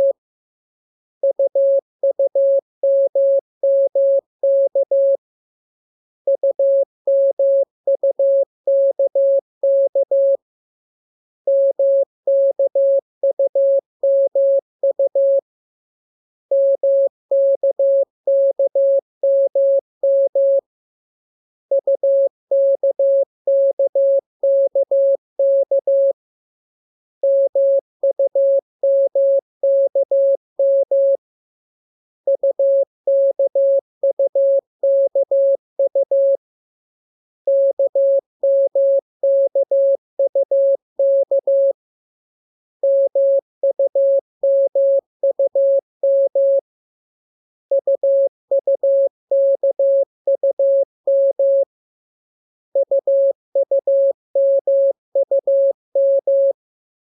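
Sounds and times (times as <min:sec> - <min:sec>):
morse code beeps: 0:01.2 - 0:05.2, 0:06.3 - 0:10.4, 0:16.5 - 0:20.6, 0:21.7 - 0:26.2, 0:27.2 - 0:31.2, 0:32.3 - 0:36.4, 0:37.5 - 0:41.8, 0:42.8 - 0:46.6, 0:47.7 - 0:51.7, 0:52.8 - 0:56.6.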